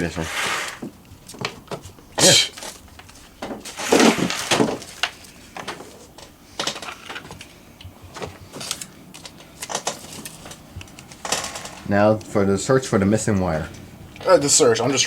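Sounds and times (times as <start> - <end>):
packaging rustling: 2.6 - 7.5
phone accessories clicking and clattering: 4.3 - 11.9.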